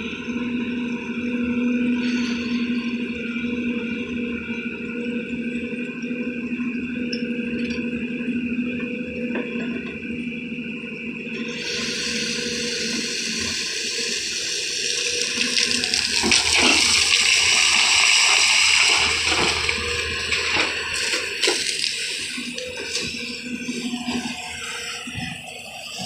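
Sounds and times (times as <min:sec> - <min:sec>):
steady low hum: 0:00.0 - 0:26.0
rushing gushing water: 0:11.4 - 0:26.0.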